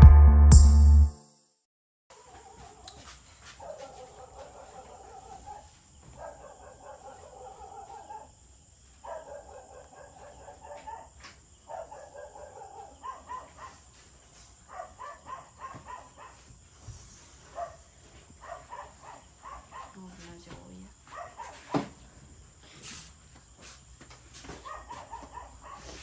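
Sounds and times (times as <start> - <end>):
dog calling and yelping: 3.6 - 8.3, 9.0 - 13.9, 14.7 - 16.4, 18.4 - 20.0, 24.6 - 26.0.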